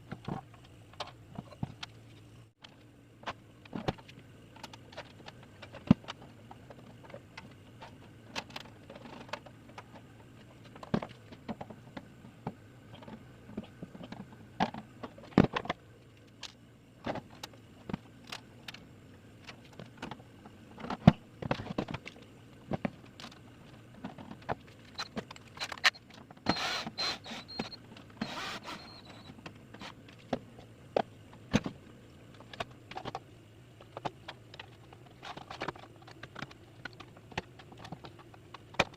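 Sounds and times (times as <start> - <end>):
clicks and knocks of tools: 20.8 - 26.9.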